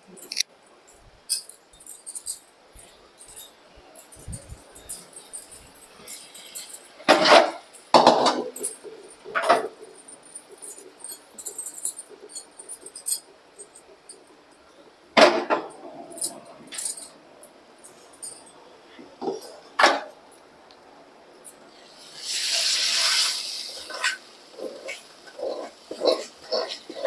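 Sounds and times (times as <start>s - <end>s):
metal utensils clinking on cookware: 1.3s - 20.2s, 21.5s - 27.0s
hot oil sizzling: 21.7s - 27.0s.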